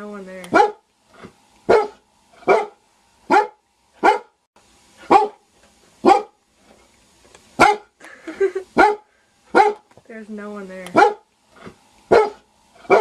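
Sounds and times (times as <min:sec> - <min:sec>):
dog barking: 0:00.5 - 0:00.8, 0:01.7 - 0:04.4, 0:05.0 - 0:05.4, 0:06.0 - 0:06.4, 0:07.6 - 0:07.9, 0:08.8 - 0:09.8, 0:10.9 - 0:11.3, 0:12.1 - 0:13.0.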